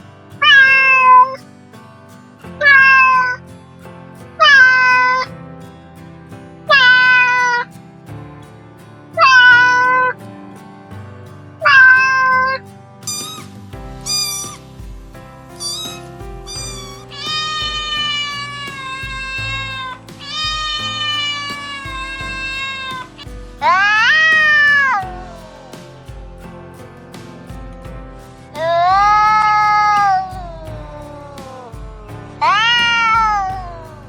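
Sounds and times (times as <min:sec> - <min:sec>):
background music: 0:00.0 - 0:34.0
cat meowing: 0:13.1 - 0:13.5, 0:14.1 - 0:14.6, 0:15.6 - 0:25.2, 0:30.6 - 0:33.8.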